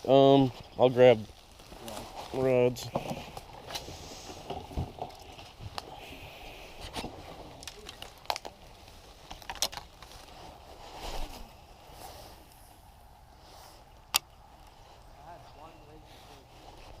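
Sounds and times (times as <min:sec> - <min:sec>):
fishing tackle clicks and rattles: 0:09.2 - 0:10.1.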